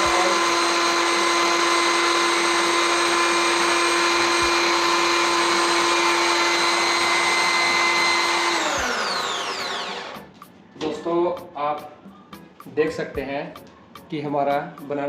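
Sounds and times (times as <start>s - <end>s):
blender motor whining: 0.0s - 10.3s.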